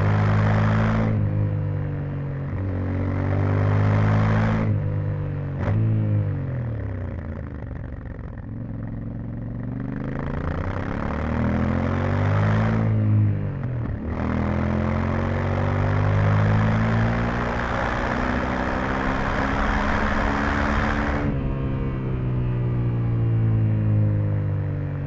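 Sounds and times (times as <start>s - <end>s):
motorcycle engine revving: 0.0s - 25.0s.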